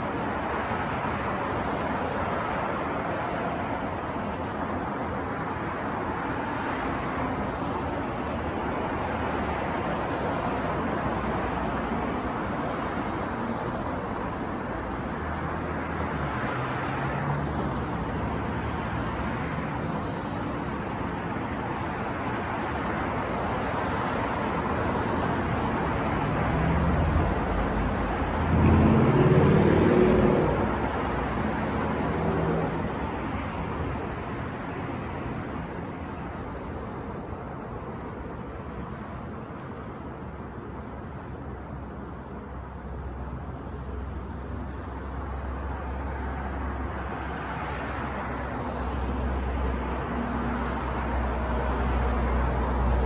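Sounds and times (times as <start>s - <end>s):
passing cars: 0.0s - 53.0s
vehicle rumble: 22.3s - 53.0s
low engine hum: 26.2s - 33.5s.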